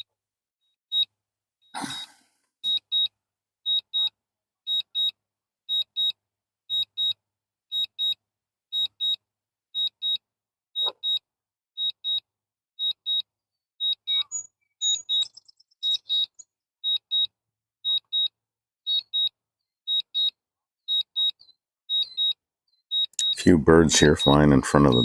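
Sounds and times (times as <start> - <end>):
remote controller beeping: 13.8 - 17.3, 19.9 - 25.0.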